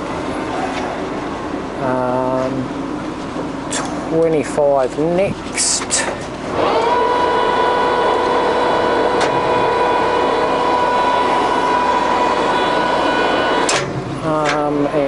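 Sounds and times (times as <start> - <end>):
lathe running with whine: 6.3 - 15.0.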